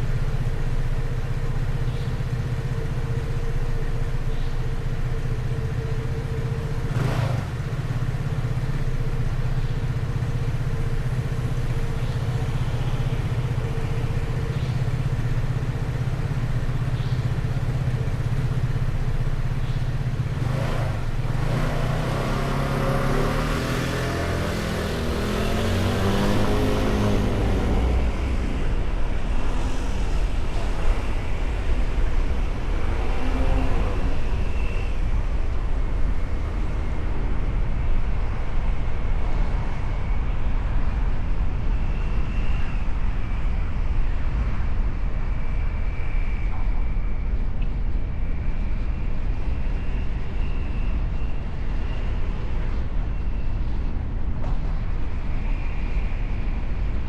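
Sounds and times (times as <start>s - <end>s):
motorcycle and car engines: 0.0s - 57.0s
road traffic: 0.0s - 57.0s
engine revving: 6.8s - 7.7s, 20.4s - 31.9s.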